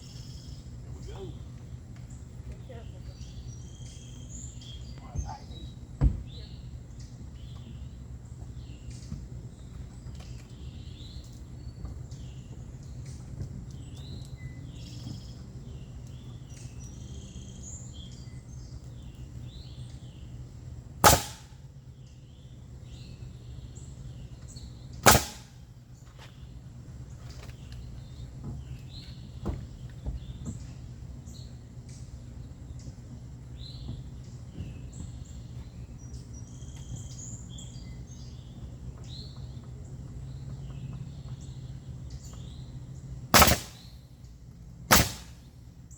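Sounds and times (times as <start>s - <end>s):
birds chirping: 0.0s - 45.9s
low steady hum: 0.0s - 45.9s
sharp loud bangs: 21.0s - 21.7s, 25.0s - 25.7s, 43.4s - 44.0s, 44.9s - 45.5s.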